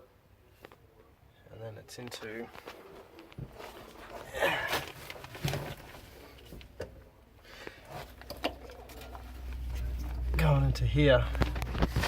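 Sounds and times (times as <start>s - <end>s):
rustling of wires and plastic: 1.9s - 12.0s
low rumble: 8.7s - 12.0s.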